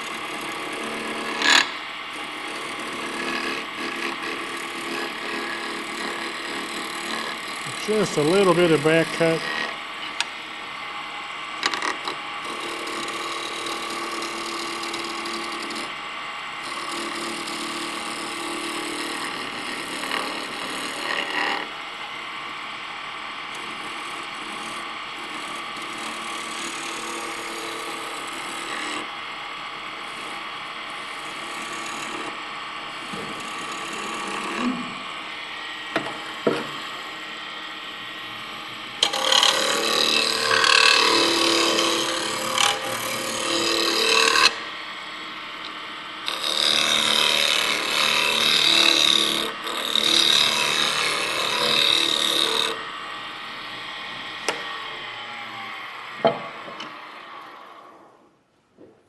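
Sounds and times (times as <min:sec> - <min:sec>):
tool scraping on wood: 0:00.0 - 0:10.3, 0:11.6 - 0:15.9, 0:16.6 - 0:21.7, 0:33.0 - 0:35.0, 0:39.0 - 0:44.6
wood lathe whirring: 0:00.0 - 0:58.3.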